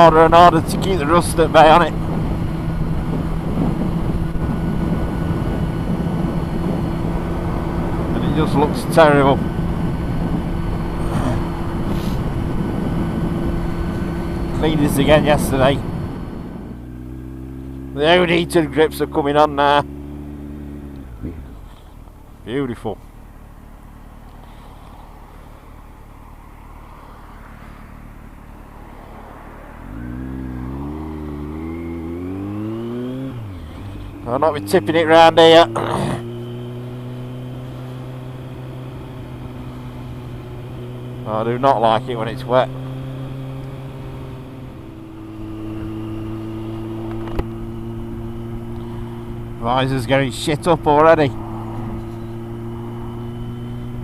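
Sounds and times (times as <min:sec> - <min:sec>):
wind noise: 0:00.0 - 0:16.8
motorcycle engine accelerating: 0:00.0 - 0:54.0
road rumble: 0:00.0 - 0:54.0.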